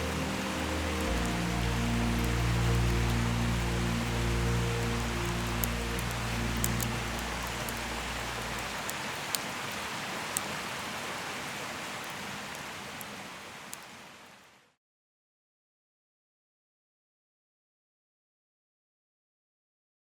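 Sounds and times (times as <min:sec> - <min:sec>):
soft sustained music notes: 0:00.0 - 0:08.9
wood fire crackling: 0:00.0 - 0:14.0.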